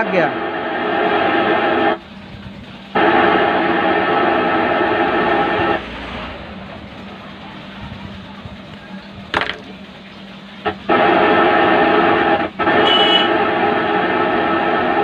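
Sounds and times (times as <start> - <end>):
fm radio through speaker: 0.0 - 2.0.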